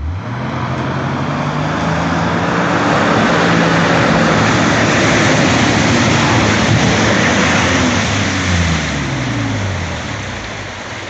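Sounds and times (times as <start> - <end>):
engine at high revs: 0.0 - 11.0
loud rushing noise: 0.0 - 11.0.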